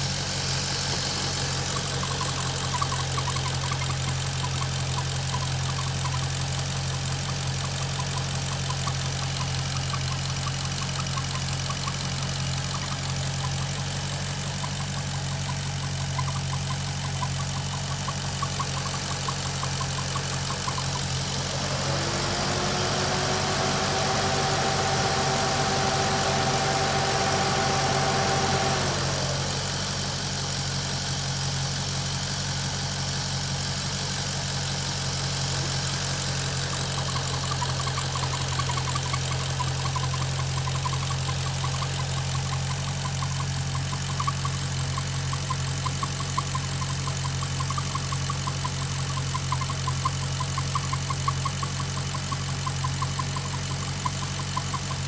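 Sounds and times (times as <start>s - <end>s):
car engine idling: 0.0s - 55.0s
fast light rhythmic ticking: 1.2s - 21.5s, 35.8s - 55.0s
steady whine: 19.8s - 30.1s.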